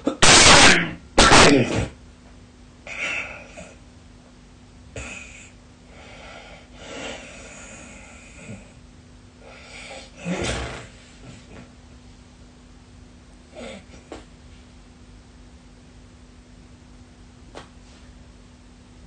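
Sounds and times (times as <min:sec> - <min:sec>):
person snoring and snorting: 0:09.4 - 0:11.6.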